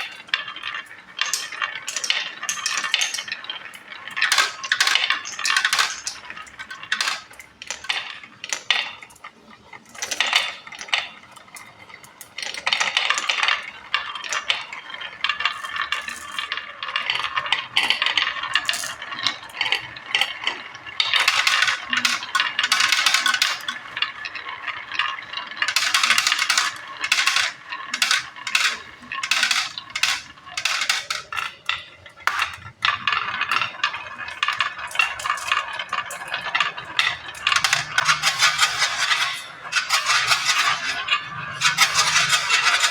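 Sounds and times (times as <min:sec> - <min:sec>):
marbles rolling and clattering: 0:00.0 - 0:42.9.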